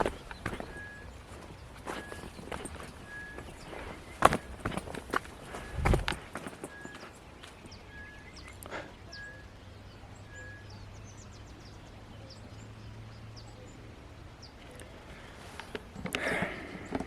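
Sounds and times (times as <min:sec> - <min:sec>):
bird whistling: 0:00.0 - 0:10.9
bird chirps: 0:00.0 - 0:17.0.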